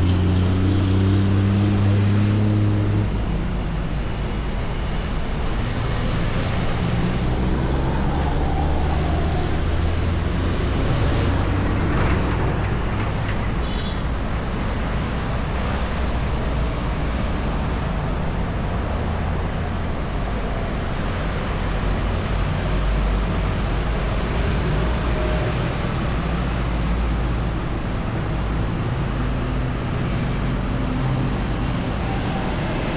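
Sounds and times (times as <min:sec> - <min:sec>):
motorbikes and cars passing: 0:00.0 - 0:32.9.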